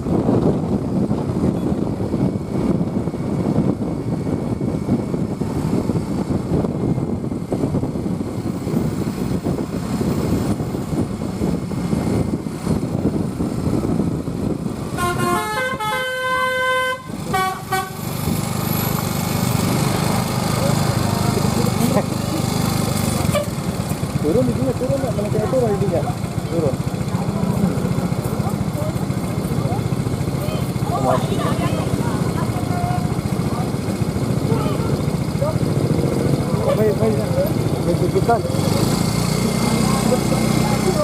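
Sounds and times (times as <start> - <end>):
engine and road rumble: 0.0 - 41.0
multi-tone bus horn tune: 14.9 - 18.2, 23.2 - 23.7.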